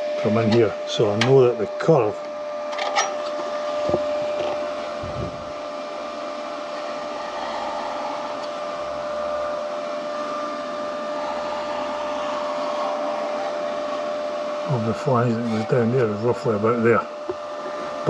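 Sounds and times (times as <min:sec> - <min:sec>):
electric fan humming: 0:00.0 - 0:18.0.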